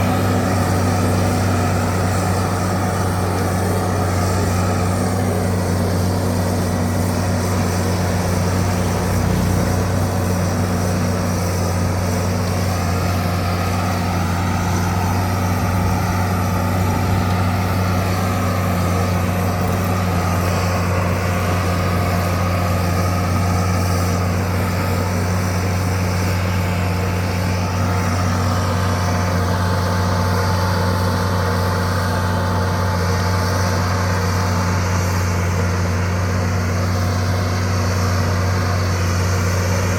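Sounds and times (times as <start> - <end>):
wavering whine: 0.0 - 29.4
bulldozer diesel engine running: 0.0 - 39.9.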